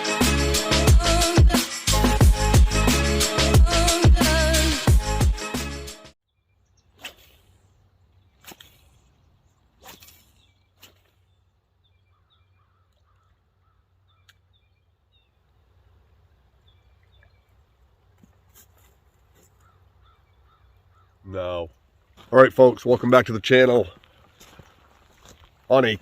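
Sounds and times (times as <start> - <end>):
faint bird chirps: 6.3 - 15.5, 19.4 - 21.8.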